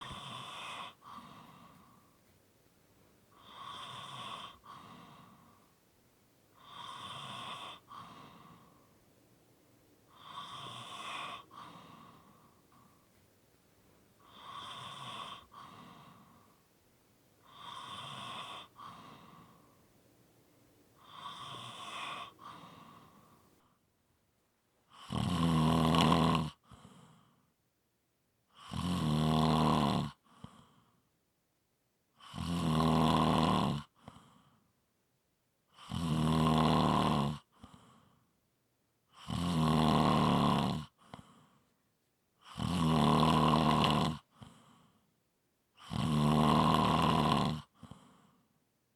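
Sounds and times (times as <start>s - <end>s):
person snoring: 0.0s - 2.0s, 3.4s - 5.5s, 6.6s - 8.8s, 10.1s - 12.9s, 14.2s - 16.4s, 17.5s - 19.6s, 21.0s - 23.3s, 24.9s - 26.6s, 28.6s - 30.2s, 32.2s - 34.0s, 35.8s - 37.5s, 39.2s - 41.2s, 42.4s - 44.4s, 45.8s - 48.0s.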